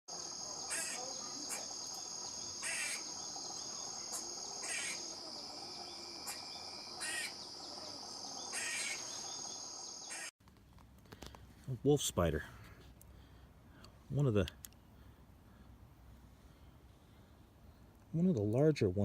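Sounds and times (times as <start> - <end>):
insects trilling: 0.1 - 10.3
insect rasping bursts: 0.3 - 5.4, 6.0 - 7.6.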